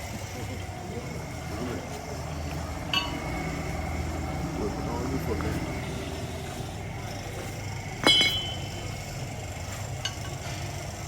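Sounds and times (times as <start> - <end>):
metal tools clinking: 2.9 - 3.3, 8.0 - 9.0, 9.9 - 10.7.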